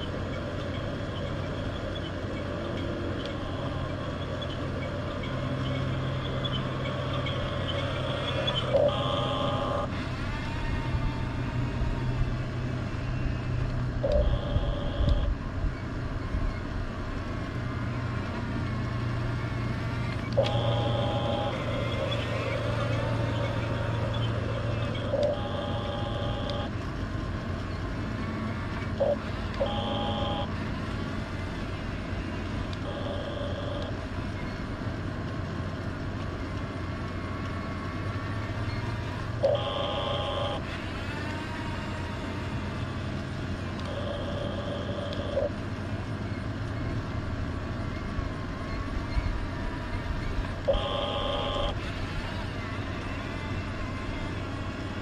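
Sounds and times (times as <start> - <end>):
electric motors whining: 0.0 - 55.0
steady low hum: 0.0 - 55.0.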